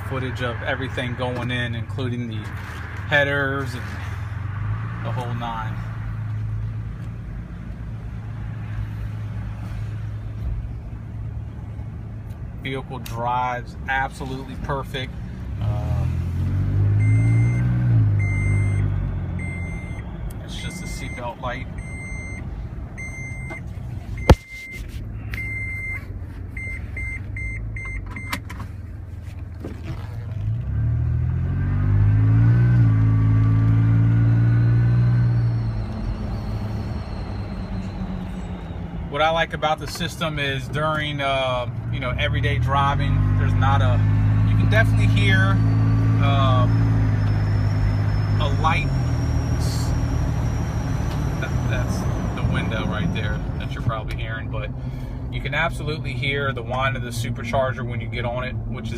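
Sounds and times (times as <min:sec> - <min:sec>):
car engine and exhaust drone: 0:00.0 - 0:58.9
seatbelt warning chime beeping: 0:17.0 - 0:28.4
supercharger whine: 0:29.6 - 0:41.2, 0:42.0 - 0:54.6.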